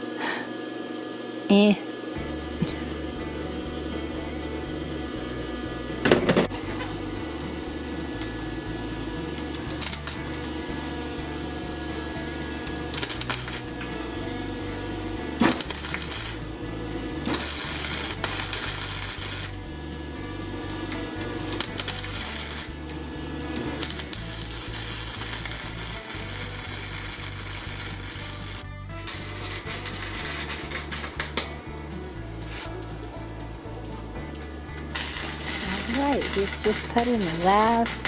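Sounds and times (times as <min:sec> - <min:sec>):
welder arc crackling and sizzling: 0:00.0 - 0:38.0
sharp crack: 0:12.9 - 0:13.8, 0:23.8 - 0:31.6.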